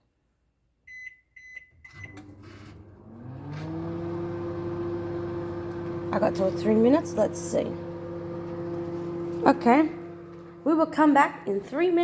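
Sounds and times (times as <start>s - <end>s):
microwave keypad beeping: 0.9s - 2.4s
microwave humming: 0.9s - 12.0s.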